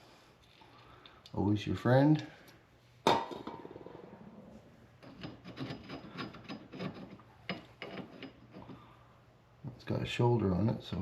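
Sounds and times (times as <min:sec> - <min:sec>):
hand tools rubbing and scraping: 0:04.5 - 0:08.9.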